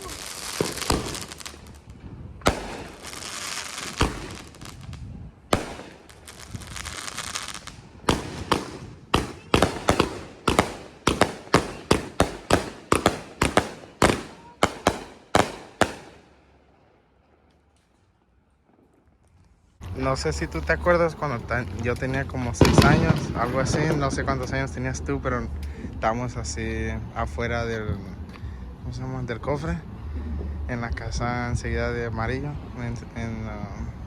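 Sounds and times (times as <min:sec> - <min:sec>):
firework shots with crackling tails: 0:00.0 - 0:16.6, 0:22.6 - 0:24.9
firework sharp bangs: 0:00.0 - 0:16.8, 0:22.6 - 0:24.7.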